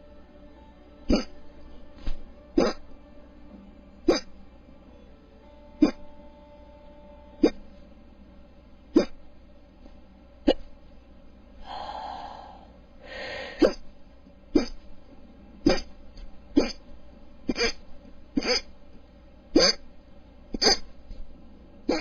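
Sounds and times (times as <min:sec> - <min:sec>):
person hiccuping: 0:01.1 - 0:01.4, 0:02.6 - 0:02.8, 0:04.1 - 0:04.3, 0:05.8 - 0:06.1, 0:07.4 - 0:07.6, 0:08.9 - 0:09.2, 0:10.4 - 0:10.7, 0:14.5 - 0:14.8, 0:15.7 - 0:16.0, 0:16.6 - 0:16.8, 0:17.5 - 0:17.8, 0:18.4 - 0:18.7, 0:19.6 - 0:19.8, 0:20.6 - 0:20.9
long breath out and in: 0:11.6 - 0:13.8.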